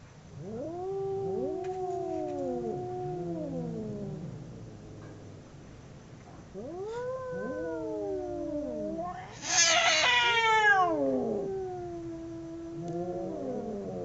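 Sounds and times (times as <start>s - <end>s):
cats caterwauling: 0.4s - 4.6s, 6.4s - 14.0s
cat screeching harshly: 9.2s - 10.9s.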